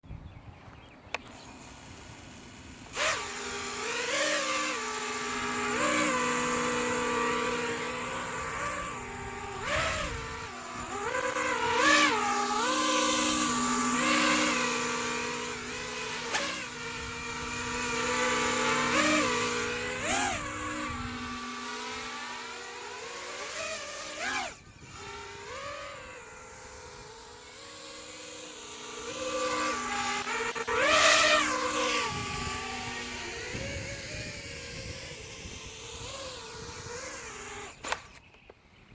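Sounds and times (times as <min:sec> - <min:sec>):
quadcopter motors whining: 0:00.1 - 0:38.9.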